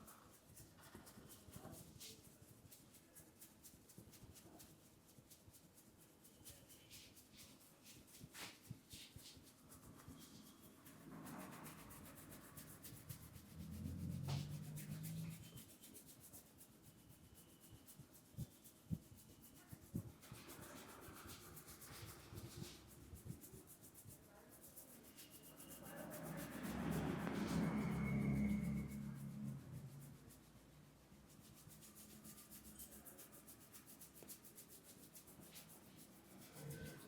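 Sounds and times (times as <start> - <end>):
hands rubbing oiled hair: 0.0 - 37.0.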